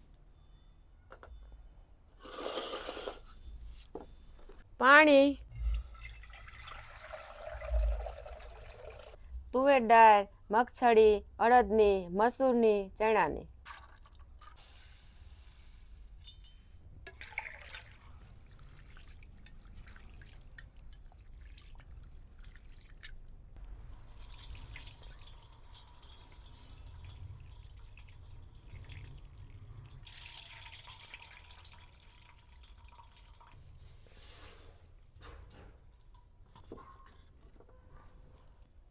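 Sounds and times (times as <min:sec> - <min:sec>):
water dripping and pouring: 0:05.5 - 0:09.2, 0:13.6 - 0:14.6, 0:17.1 - 0:34.1.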